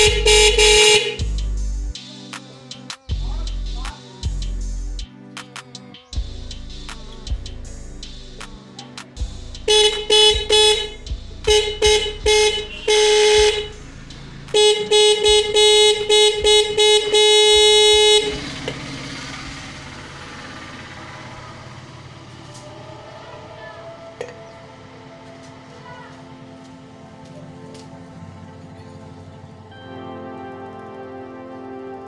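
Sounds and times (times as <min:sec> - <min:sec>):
motorcycle horn tooting: 0:00.0 - 0:01.2, 0:09.7 - 0:13.8, 0:14.5 - 0:19.6.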